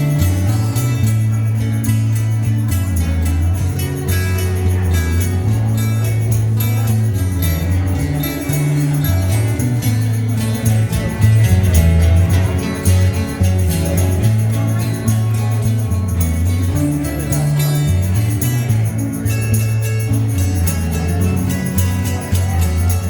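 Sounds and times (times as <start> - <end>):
bass line: 0.0 - 23.0
light percussion: 0.0 - 23.0
strummed acoustic guitars: 0.0 - 23.0.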